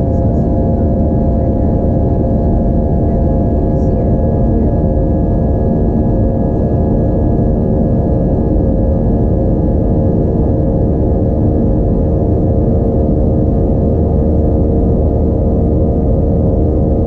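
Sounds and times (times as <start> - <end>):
jet engines droning in cabin: 0.0 - 17.0.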